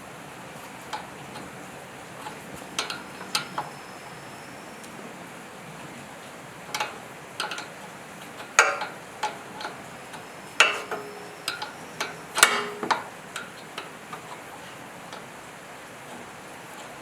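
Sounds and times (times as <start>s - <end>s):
metal tools clinking: 2.7s - 4.8s, 6.7s - 15.3s.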